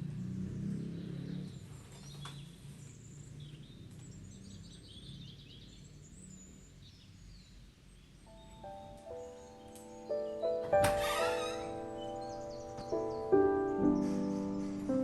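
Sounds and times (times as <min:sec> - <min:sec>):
birds chirping: 0:00.0 - 0:15.0.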